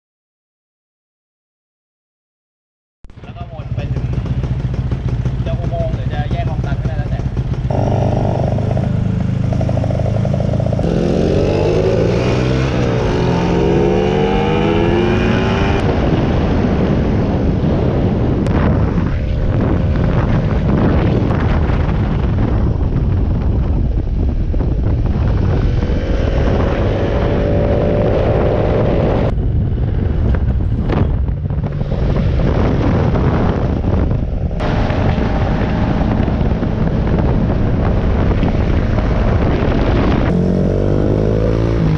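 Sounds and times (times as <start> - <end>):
small motorcycle engines revving: 3.4 - 17.0, 25.0 - 29.4, 30.0 - 41.9.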